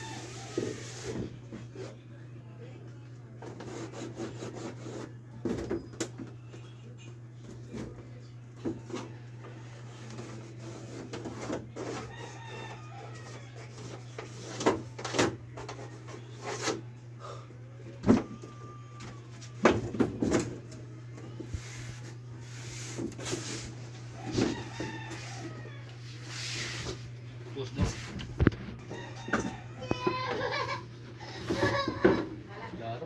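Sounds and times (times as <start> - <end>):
rooster crowing: 0.0 - 1.1, 11.8 - 14.0, 18.2 - 19.6, 24.0 - 26.7, 28.8 - 32.2.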